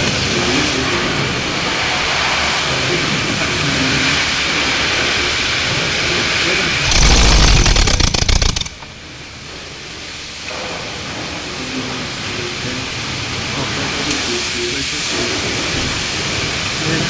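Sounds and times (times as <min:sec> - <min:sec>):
rapid engine pulsing: 0:06.5 - 0:08.8.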